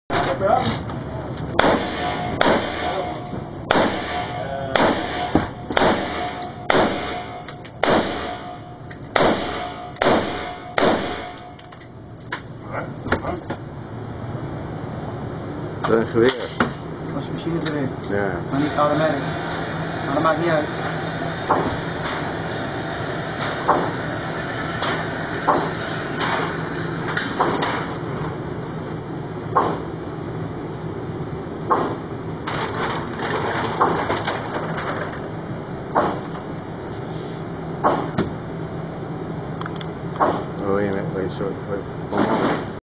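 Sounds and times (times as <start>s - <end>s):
steady background hum: 0.1s - 42.8s
gunshots: 1.6s - 8.6s, 9.2s - 11.4s
rifle shots with echo: 1.6s - 8.6s, 9.2s - 11.4s.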